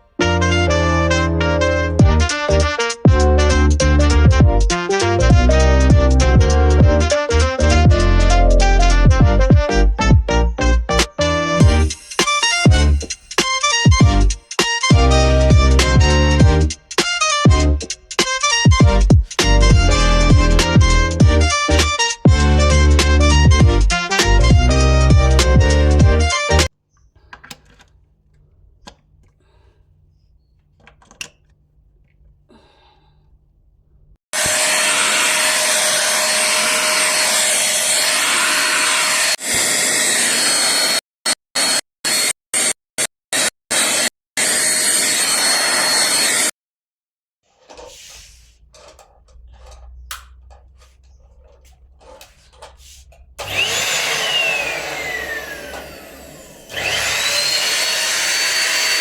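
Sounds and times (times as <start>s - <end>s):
vacuum cleaner running: 11.6s - 14.0s, 34.4s - 40.8s, 53.4s - 59.0s.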